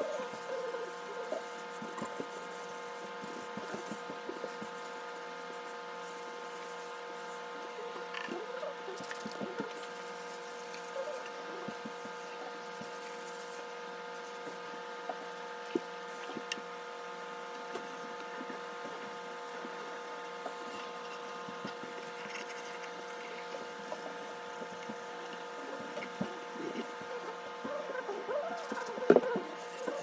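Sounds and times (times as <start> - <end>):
steady humming tone: 0.0 - 30.0.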